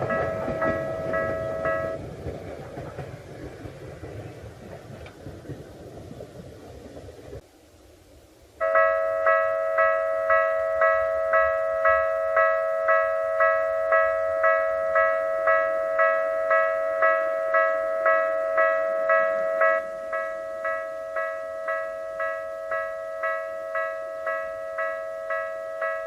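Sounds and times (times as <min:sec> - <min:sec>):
level-crossing electronic bell: 0:00.0 - 0:02.0, 0:08.6 - 0:26.0.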